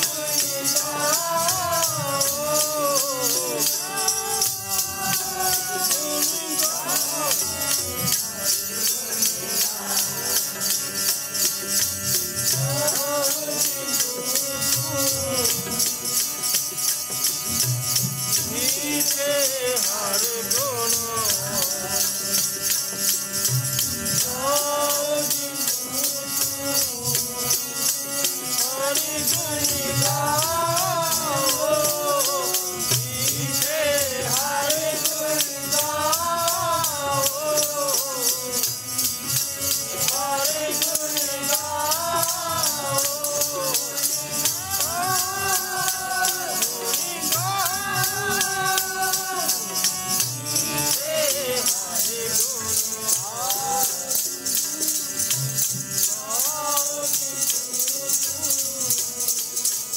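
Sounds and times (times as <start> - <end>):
person singing wavering melody: 0.0 - 11.7, 12.4 - 16.3, 18.3 - 22.6, 24.1 - 59.9
jingling hand percussion: 0.0 - 59.9.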